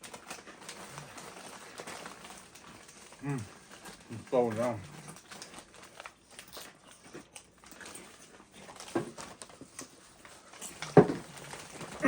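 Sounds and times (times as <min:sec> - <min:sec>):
chips being chewed and crunched: 0:00.0 - 0:12.0.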